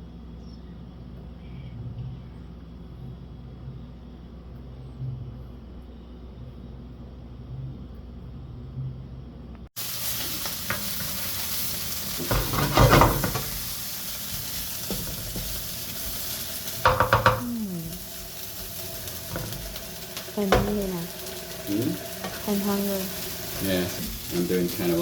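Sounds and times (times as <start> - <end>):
food sizzling in a pan: 9.8 - 25.0
spatula scraping a pan: 10.3 - 13.7.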